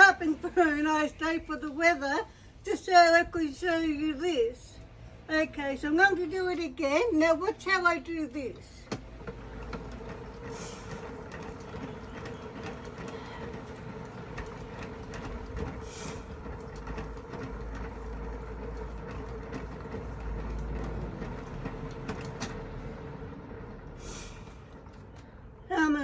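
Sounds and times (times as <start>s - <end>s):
hand-cranked washing machine rattle: 8.9s - 26.0s.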